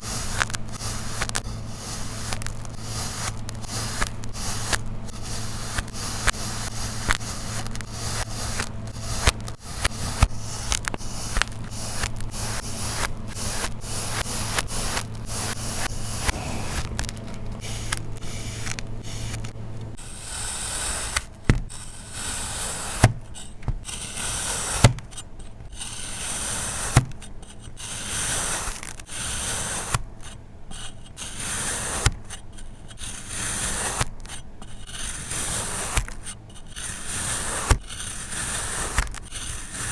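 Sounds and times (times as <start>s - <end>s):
low steady hum: 0.0s - 25.9s
tool scraping sand: 0.0s - 39.9s.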